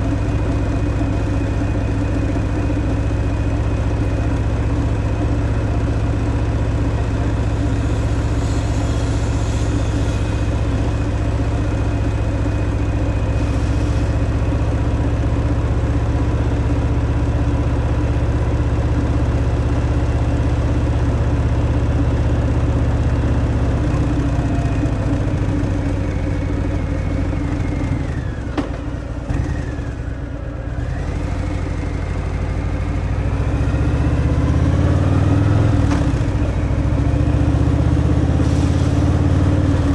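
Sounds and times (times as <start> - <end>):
motorcycle engine cruising: 23.8 - 39.9.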